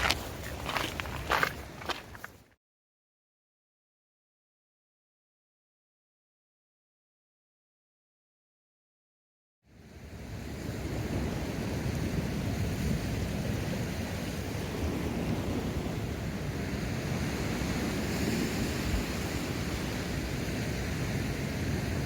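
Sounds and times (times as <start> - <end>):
sea surf on rocky shore: 0.0 - 2.3, 9.8 - 22.0.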